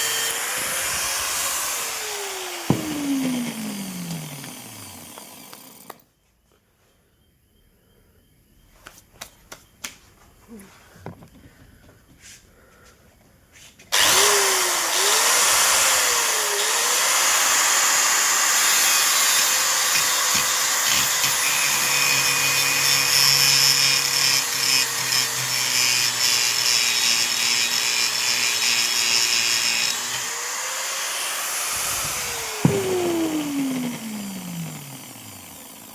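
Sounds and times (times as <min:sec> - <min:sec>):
angle grinder cutting acrylic: 0:00.0 - 0:06.0, 0:14.0 - 0:35.9.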